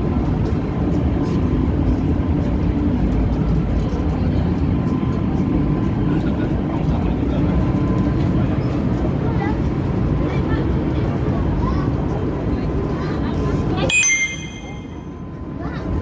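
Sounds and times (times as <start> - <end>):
ship engines droning: 0.0 - 16.0.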